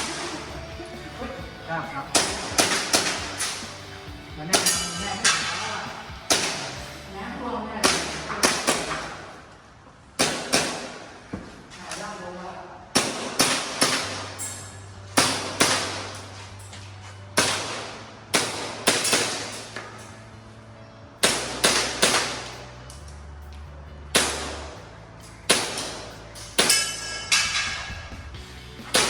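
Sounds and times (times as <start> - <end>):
airsoft pistol shots: 2.1 - 3.7, 4.5 - 6.8, 7.8 - 9.3, 10.2 - 11.2, 13.0 - 14.4, 15.2 - 16.2, 17.4 - 19.8, 21.2 - 22.6, 24.2 - 24.8, 25.5 - 27.9.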